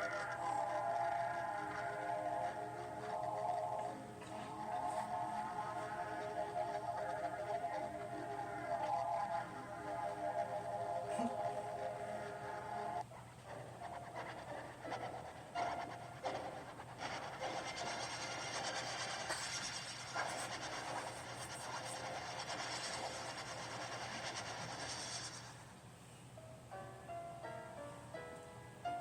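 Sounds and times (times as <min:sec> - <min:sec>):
hissing rushing noise: 0:14.2 - 0:25.7.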